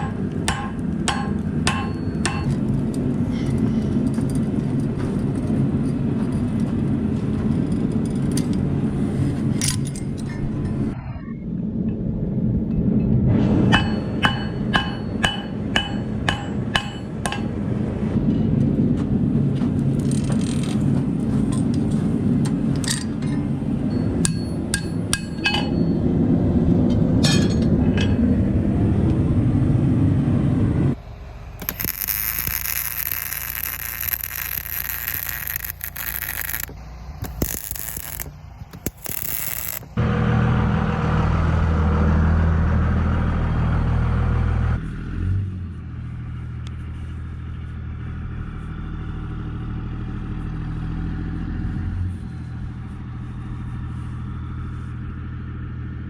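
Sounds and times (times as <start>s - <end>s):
hammer striking anvil: 0.0s - 2.6s, 13.7s - 17.6s, 24.2s - 26.0s
low rumble: 8.8s - 16.7s.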